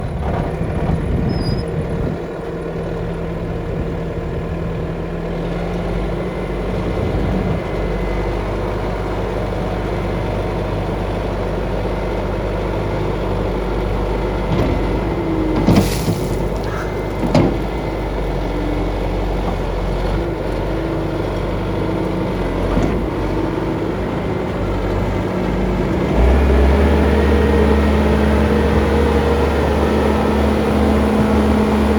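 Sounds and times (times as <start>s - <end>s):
diesel engine running: 0.0s - 31.9s
sharp clunk: 15.6s - 17.8s.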